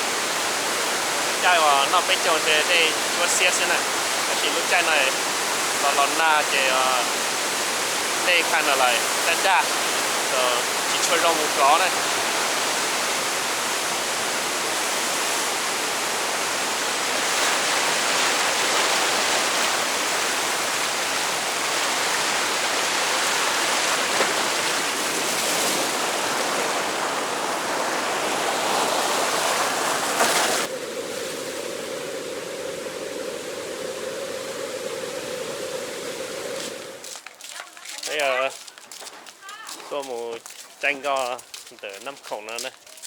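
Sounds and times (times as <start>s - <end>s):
waterfall rushing: 0.0s - 30.7s.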